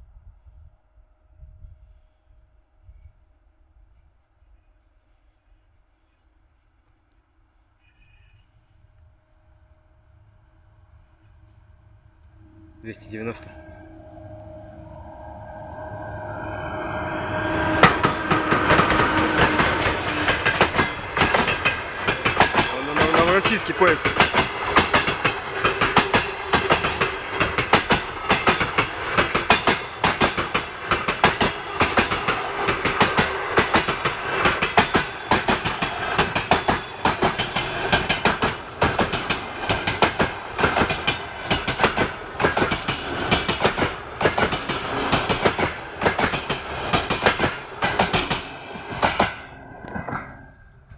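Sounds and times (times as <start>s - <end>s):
train wheels clattering over rails: 17.8s - 50.9s.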